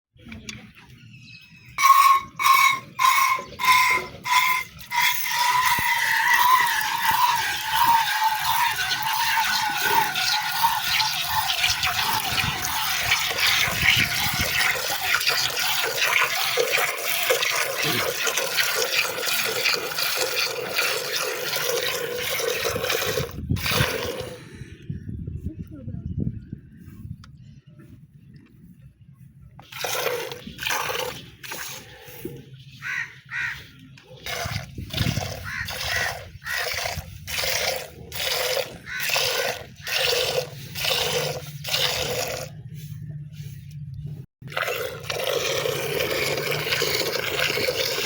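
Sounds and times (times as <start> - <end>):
milk squirting into a container: 4.9 - 24.4, 29.7 - 31.9, 44.5 - 48.0.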